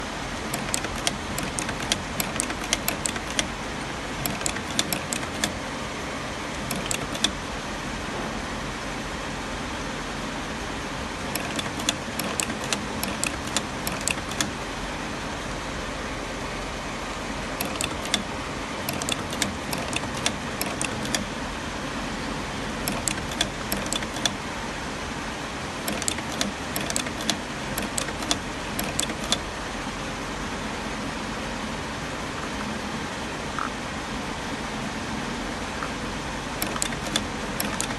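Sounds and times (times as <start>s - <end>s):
machinery humming: 0.0s - 37.9s
bursts of sharp clicks: 0.5s - 3.6s, 4.2s - 5.6s, 6.5s - 7.4s, 11.4s - 14.6s, 17.6s - 21.3s, 25.9s - 29.5s, 36.6s - 37.9s.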